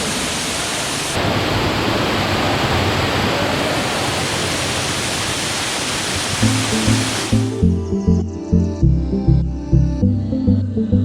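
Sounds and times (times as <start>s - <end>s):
waterfall pouring: 0.0s - 7.6s.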